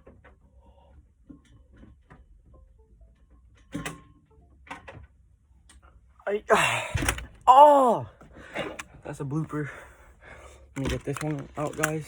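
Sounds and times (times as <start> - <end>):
keyboard handling clicks: 10.8 - 12.0.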